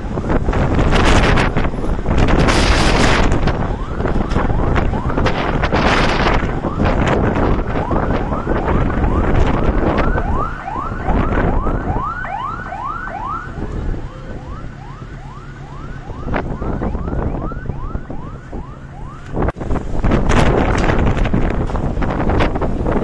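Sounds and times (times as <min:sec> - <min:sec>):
wind buffeting microphone: 0:00.0 - 0:23.0.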